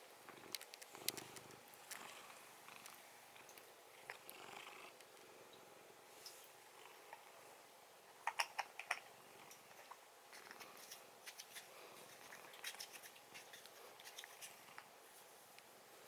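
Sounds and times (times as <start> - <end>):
faint small clicks and scratches: 0.3 - 5.3, 8.2 - 14.9.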